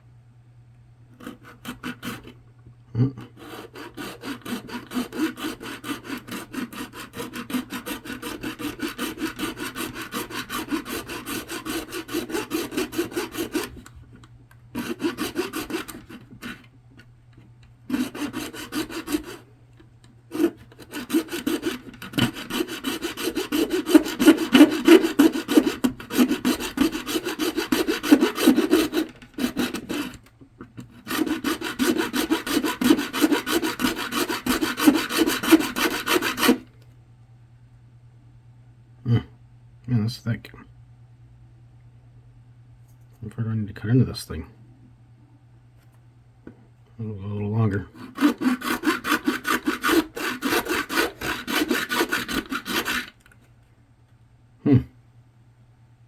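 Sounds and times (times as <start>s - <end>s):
hacksaw cutting plastic: 1.2s - 2.4s, 3.3s - 13.9s, 14.7s - 16.7s, 17.9s - 19.5s, 20.3s - 36.7s, 47.9s - 53.4s.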